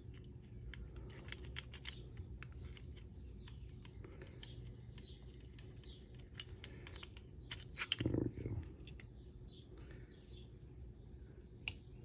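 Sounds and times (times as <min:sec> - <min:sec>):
small metal parts clicking: 0:00.0 - 0:08.1
low steady hum: 0:00.0 - 0:12.0.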